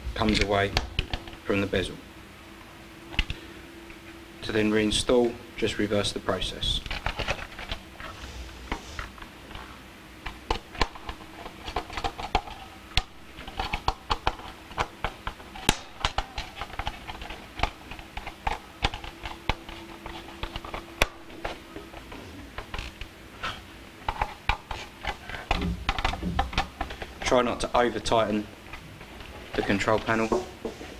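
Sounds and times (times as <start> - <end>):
faint steady hum: 0.0 - 30.9.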